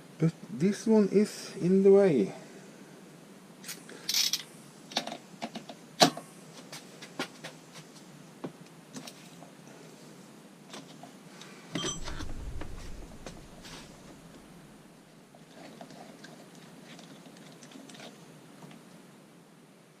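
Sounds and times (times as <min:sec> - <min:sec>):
faint metallic ring: 0:11.8 - 0:14.6
low rubbing and rumbling: 0:11.9 - 0:14.9.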